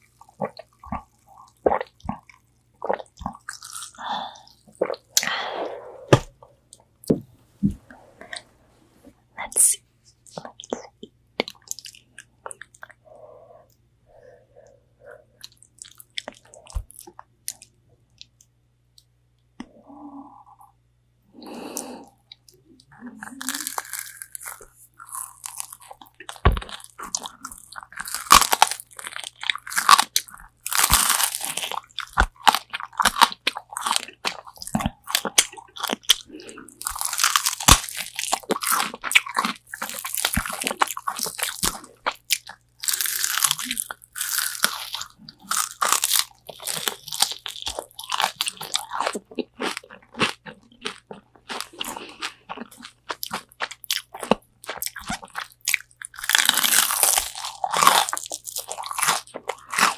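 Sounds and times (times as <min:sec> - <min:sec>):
crunching fried chicken: 0:23.2 - 0:59.9.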